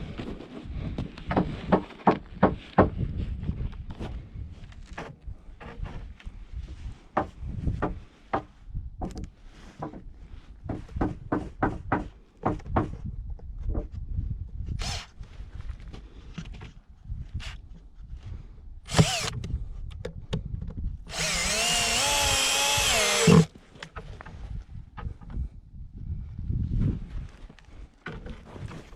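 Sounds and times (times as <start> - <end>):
power tool running: 18.9 - 19.4, 21.1 - 23.5.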